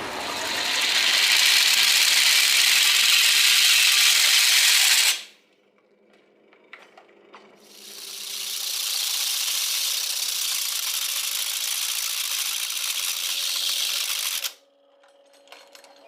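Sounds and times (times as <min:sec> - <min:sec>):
drill bit grinding on abrasive wheel: 0:00.0 - 0:05.3, 0:07.6 - 0:14.6.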